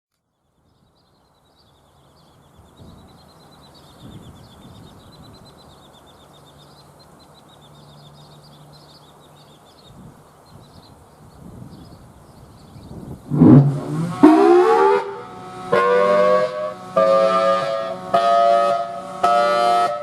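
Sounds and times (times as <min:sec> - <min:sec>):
songbird chirping: 0:00.1 - 0:15.2
wind rumble on microphone: 0:02.5 - 0:05.9, 0:09.8 - 0:14.6.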